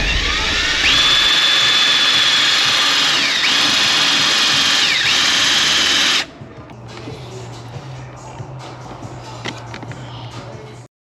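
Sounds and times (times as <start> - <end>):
power drill whining: 0.0 - 6.3.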